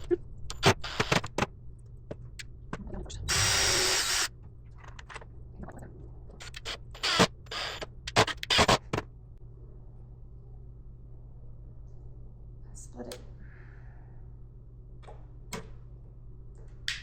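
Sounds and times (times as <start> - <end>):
power drill running: 3.3 - 4.3.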